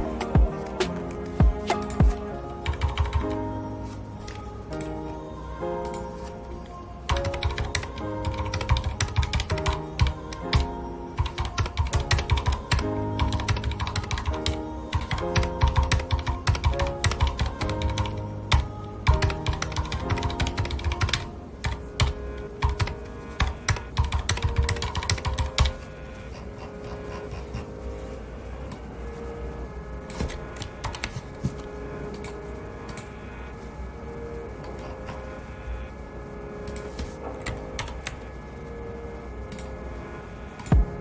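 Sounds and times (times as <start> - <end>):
soft background music: 0.0 - 41.0
fast mechanical keyboard typing: 7.1 - 10.6, 11.2 - 25.8.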